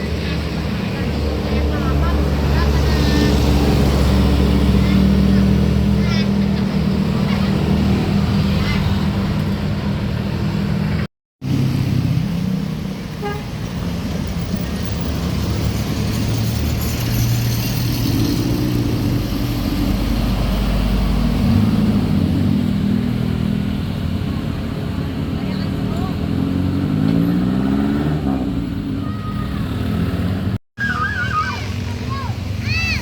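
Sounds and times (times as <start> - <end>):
bus engine rumbling: 0.0 - 33.0
bus multi-tone horn: 13.2 - 13.6.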